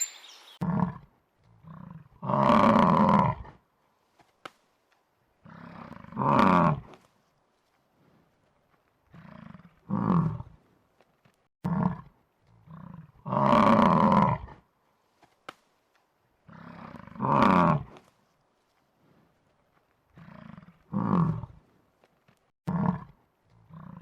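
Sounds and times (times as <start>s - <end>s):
lion roaring: 0.6s - 3.6s, 5.4s - 6.9s, 9.1s - 10.6s, 11.6s - 14.6s, 16.5s - 17.9s, 20.1s - 21.6s, 22.7s - 24.0s.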